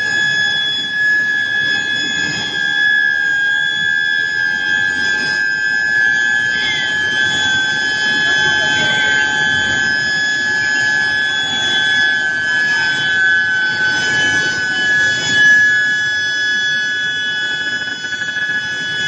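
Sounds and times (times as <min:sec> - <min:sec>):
high-pitched furnace whine: 0:00.0 - 0:19.0.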